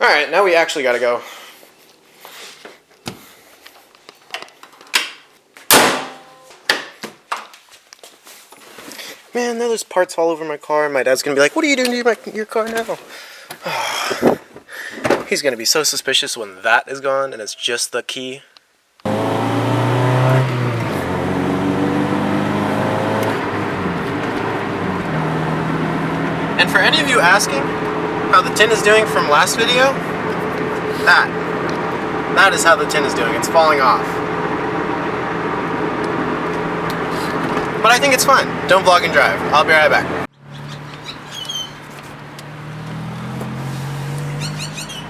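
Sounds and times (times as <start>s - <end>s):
loud ringing bang: 5.7s - 6.5s
car engine: 19.1s - 45.0s
road noise: 19.1s - 45.0s.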